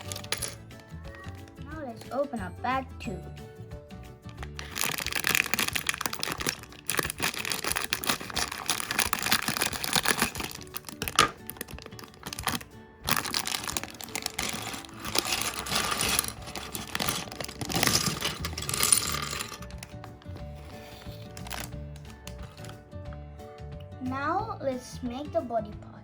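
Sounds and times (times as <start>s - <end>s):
plastic bag tearing and crinkling: 0.0s - 0.6s, 4.2s - 22.8s
background music: 0.0s - 26.0s.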